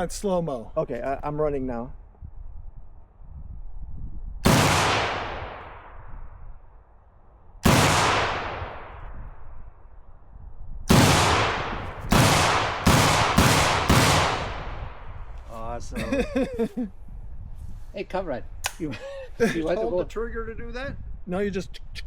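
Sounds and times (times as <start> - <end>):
rifle shots echoing: 4.5 - 6.1, 7.6 - 9.2, 10.9 - 15.1.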